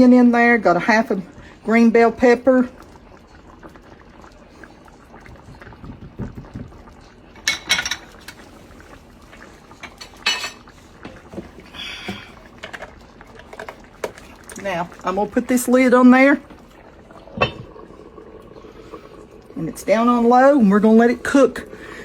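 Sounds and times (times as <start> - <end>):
utensils clinking against cookware: 7.4 - 8.2, 9.8 - 10.7.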